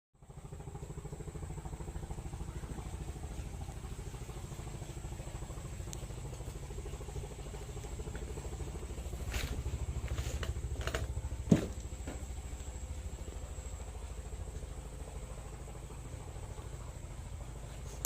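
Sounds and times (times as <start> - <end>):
engine idling: 0.2 - 18.0.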